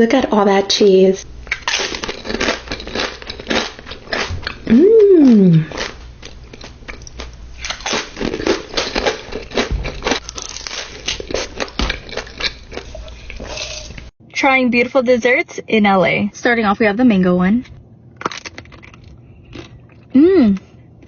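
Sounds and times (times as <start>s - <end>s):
taco shell crunching: 1.5s - 14.1s, 18.1s - 20.1s.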